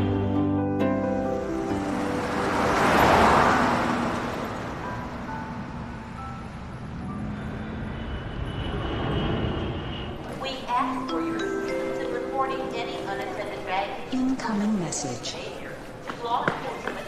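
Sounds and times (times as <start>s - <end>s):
vehicle passing by: 1.2s - 10.6s.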